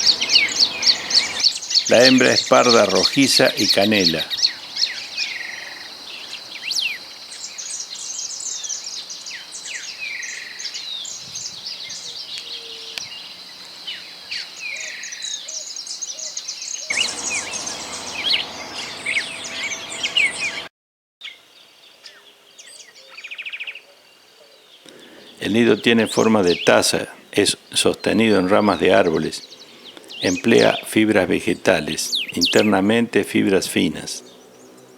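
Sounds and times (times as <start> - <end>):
bird chirps and whistled notes: 0.0 - 3.1, 4.3 - 21.4
chorus of other birds: 0.0 - 34.9.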